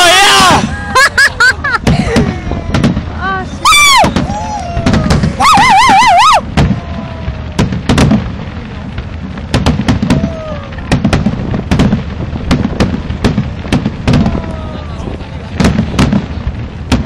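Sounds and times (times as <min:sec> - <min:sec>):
fireworks bangs: 0:00.0 - 0:17.0
warbling firework whistle: 0:02.2 - 0:08.2.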